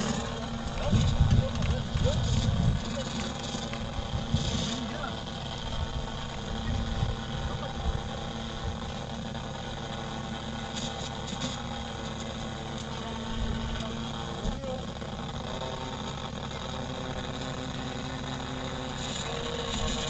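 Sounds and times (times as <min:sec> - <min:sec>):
electric motor drone: 0:00.0 - 0:20.0
wind rumbling on microphone: 0:00.6 - 0:03.1, 0:05.6 - 0:08.8.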